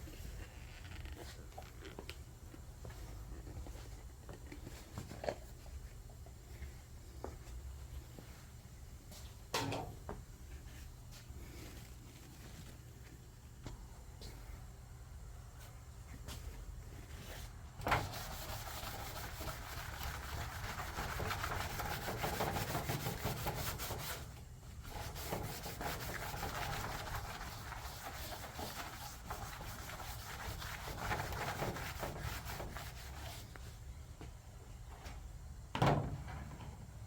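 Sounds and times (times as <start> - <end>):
scratchy scrubbing on metal: 17.8 - 33.6.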